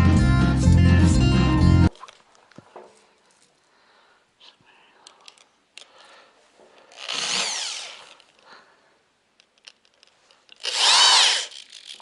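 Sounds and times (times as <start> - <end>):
power drill driving screws into rubber: 7.0 - 8.3, 10.6 - 12.0.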